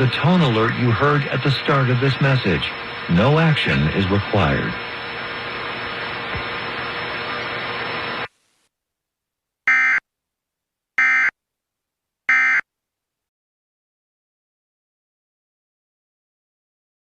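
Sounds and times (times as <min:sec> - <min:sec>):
radio static hiss: 0:00.0 - 0:08.7.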